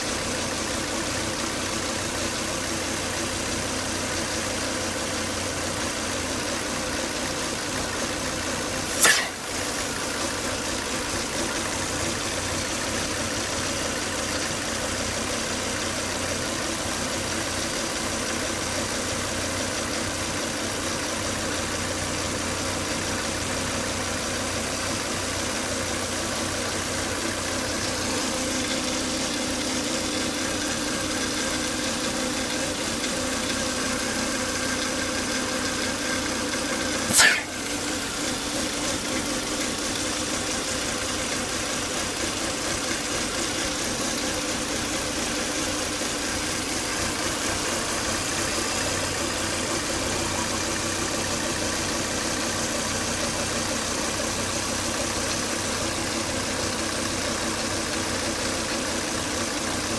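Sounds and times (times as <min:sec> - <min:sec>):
car engine idling with whine: 0:00.0 - 0:59.9
sharp click: 0:08.9 - 0:09.5, 0:37.1 - 0:37.7.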